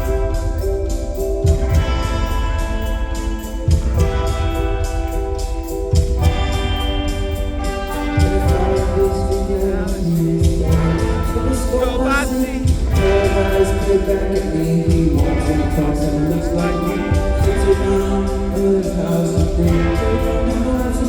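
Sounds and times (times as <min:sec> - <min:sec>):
held chords: 0:00.0 - 0:21.0
person singing: 0:00.0 - 0:21.0.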